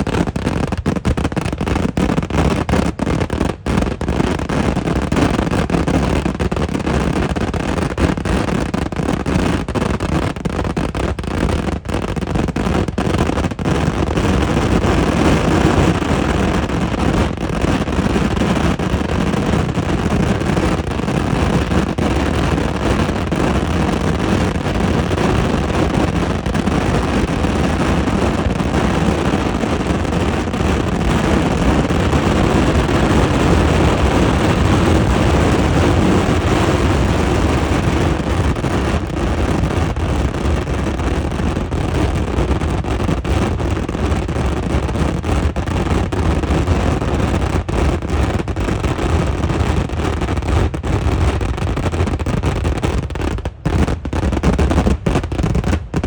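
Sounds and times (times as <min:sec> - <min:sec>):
firework barrage rumbling: 0:00.0 - 0:56.0
sharp firework blasts: 0:00.0 - 0:56.0.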